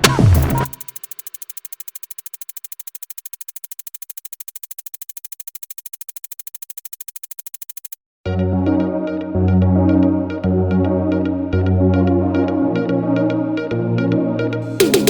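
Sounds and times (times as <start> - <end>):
electronic music beat: 0.0 - 8.0, 14.7 - 15.0
fast synth pulse: 0.0 - 8.0, 14.8 - 15.0.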